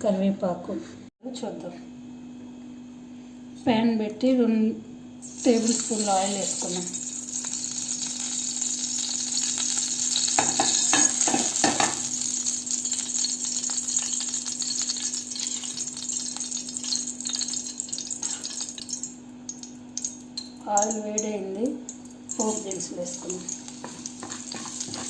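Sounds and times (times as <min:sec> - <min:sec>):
oil sizzling in a frying pan: 0:05.2 - 0:25.0.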